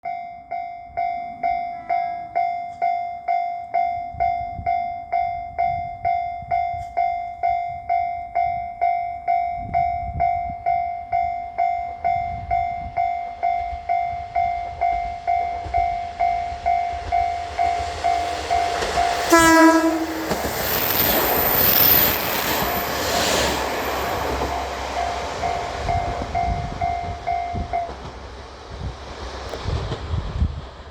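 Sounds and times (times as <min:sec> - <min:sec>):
level crossing warning bell ringing: 0:00.0 - 0:27.9
diesel railcar passing: 0:01.3 - 0:30.9
train horn blast: 0:19.1 - 0:20.8.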